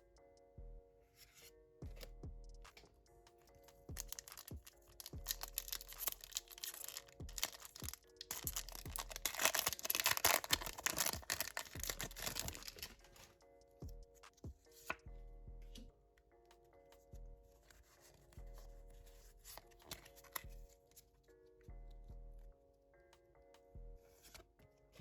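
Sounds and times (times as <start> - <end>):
background music: 0.0 - 25.0
wrapper tearing and crinkling: 4.0 - 13.2.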